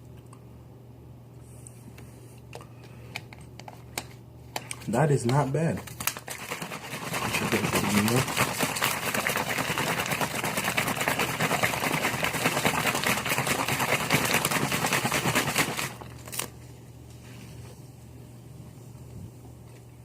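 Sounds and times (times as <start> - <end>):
drink shaker rattling: 5.8 - 16.1.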